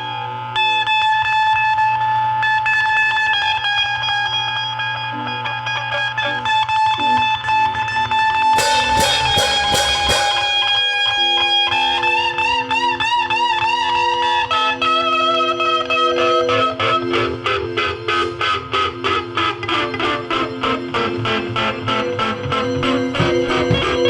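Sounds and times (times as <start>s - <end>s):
electric guitar music: 0.0s - 24.0s.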